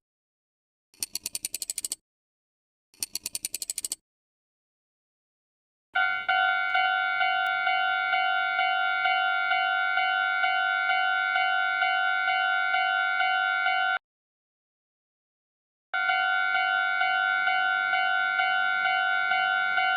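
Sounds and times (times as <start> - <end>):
railroad crossing warning bell: 6.0 - 14.0, 16.0 - 19.9.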